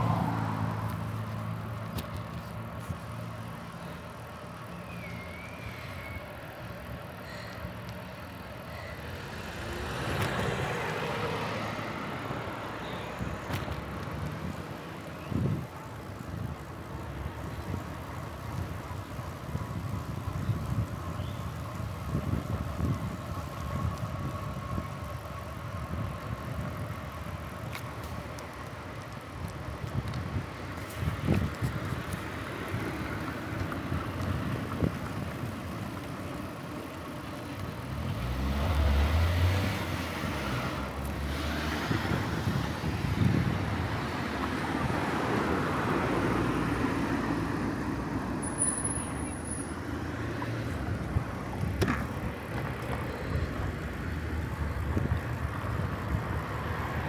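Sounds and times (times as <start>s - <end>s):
vehicle passing: 0.0s - 3.8s, 9.1s - 16.2s, 37.8s - 57.0s
road traffic noise: 0.0s - 57.0s.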